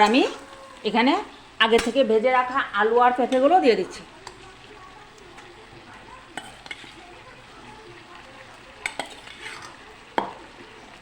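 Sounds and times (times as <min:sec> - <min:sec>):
curry sizzling in a pan: 0:00.0 - 0:11.0
spatula stirring food: 0:00.0 - 0:11.0.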